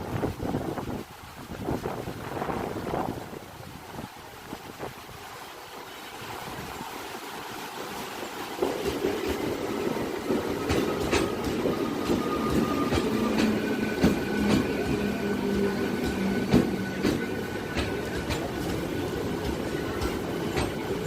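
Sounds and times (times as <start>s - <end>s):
train running on rails: 0.0s - 21.0s
wheels clacking over rail joints: 7.8s - 21.0s.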